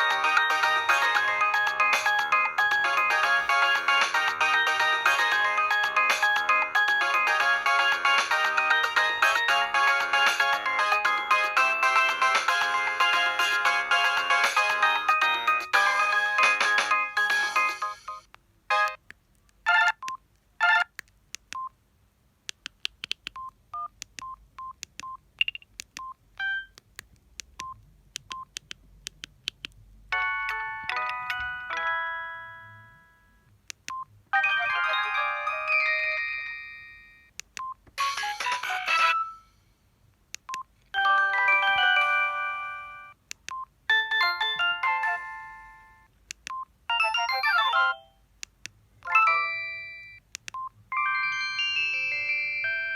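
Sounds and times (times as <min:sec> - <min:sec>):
phone ringtone melodies: 0:00.0 - 0:19.0, 0:30.1 - 0:33.5, 0:34.3 - 0:37.3, 0:38.0 - 0:39.6, 0:41.0 - 0:43.2, 0:43.9 - 0:46.1, 0:46.9 - 0:48.2, 0:49.1 - 0:50.2, 0:50.9 - 0:52.9
phone short beeps and clicks: 0:23.4 - 0:26.8.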